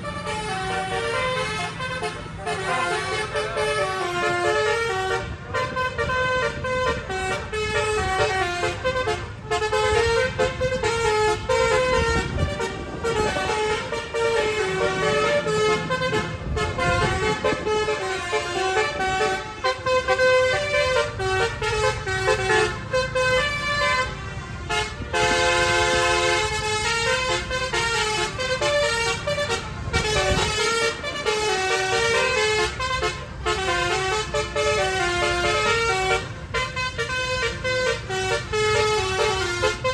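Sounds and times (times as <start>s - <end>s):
low engine noise: 0.0s - 39.9s
musical air horns playing a tune: 0.0s - 39.9s.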